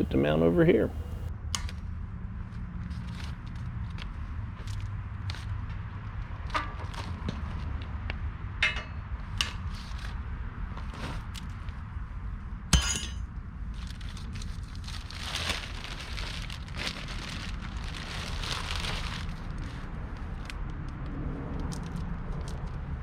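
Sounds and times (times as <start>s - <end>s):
steady low rumble: 0.0s - 23.0s
metallic clink: 12.8s - 13.3s.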